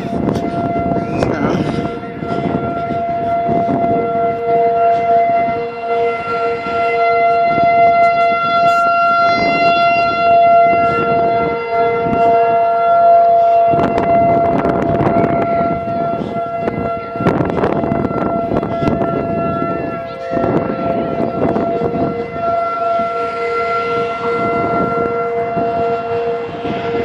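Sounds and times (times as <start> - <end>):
outdoor warning sirens wailing: 0.0 - 27.0.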